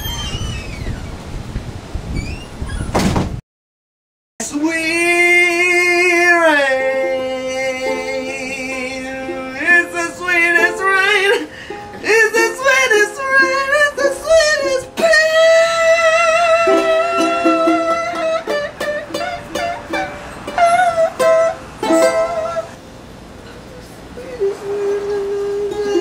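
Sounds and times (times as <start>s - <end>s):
person singing wordless notes: 4.4s - 22.8s, 24.2s - 26.0s
plucked ukulele: 6.8s - 22.7s, 25.5s - 26.0s.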